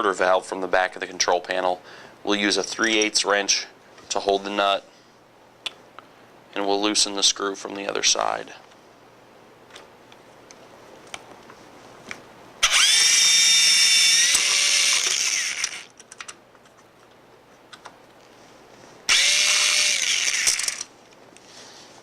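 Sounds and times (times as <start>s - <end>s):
power drill whining: 12.6s - 15.9s, 19.1s - 20.9s.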